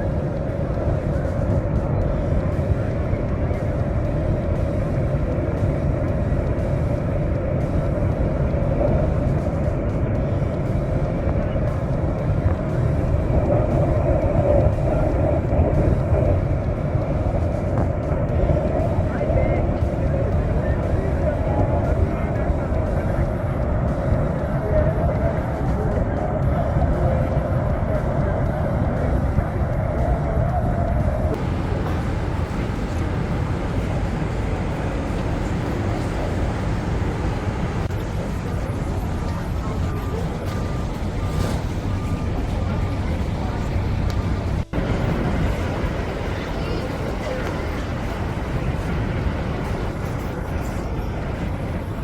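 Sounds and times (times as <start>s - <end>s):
waterfall roaring: 31.3s - 52.0s.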